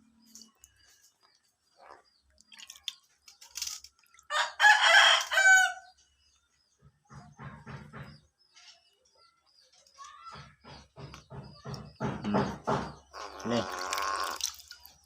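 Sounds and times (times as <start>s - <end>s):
rooster crowing: 4.3s - 5.9s
low clucking calls: 12.2s - 14.5s.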